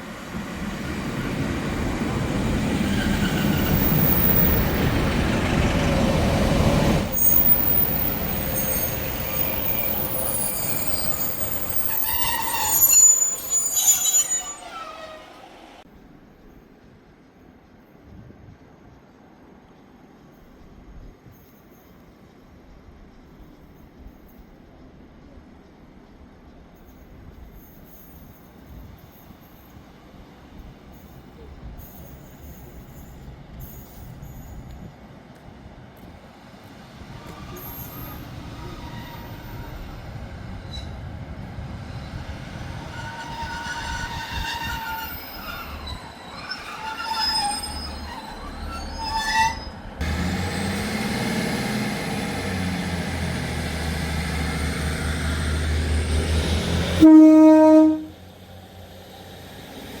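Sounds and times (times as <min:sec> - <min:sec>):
train wheels squealing on rails: 0:00.0 - 0:15.9, 0:20.1 - 0:25.3, 0:26.6 - 0:36.2, 0:36.8 - 0:58.1
diesel train rumbling past: 0:00.0 - 1:00.0
train horn: 0:56.9 - 0:58.2.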